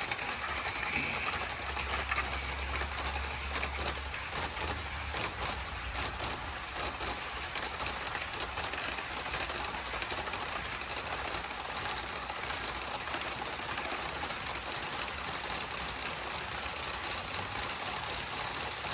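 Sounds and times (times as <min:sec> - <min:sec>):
low rumble of moving train: 0:00.0 - 0:09.6
train wheels clattering over rail joints: 0:00.0 - 0:12.0.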